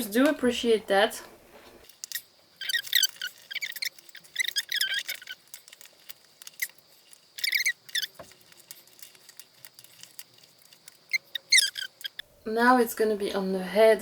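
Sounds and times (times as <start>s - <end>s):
plastic packaging squeaking: 1.8s - 12.2s.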